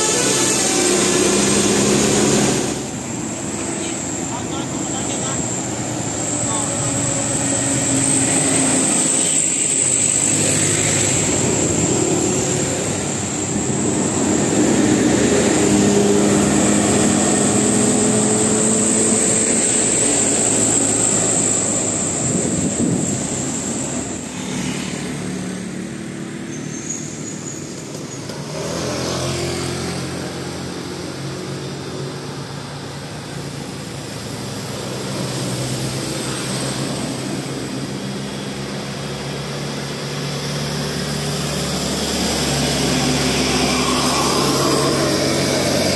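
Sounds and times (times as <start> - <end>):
steady high whine: 0.0 - 28.4, 30.1 - 45.9
bus engine revving: 0.0 - 45.9.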